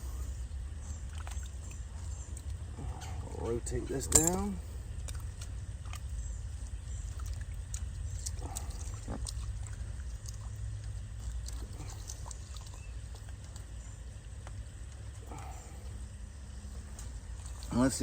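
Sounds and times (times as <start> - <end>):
steady low rumble: 0.0 - 18.0
pigs grunting: 2.4 - 4.8, 6.9 - 13.8, 15.1 - 16.2.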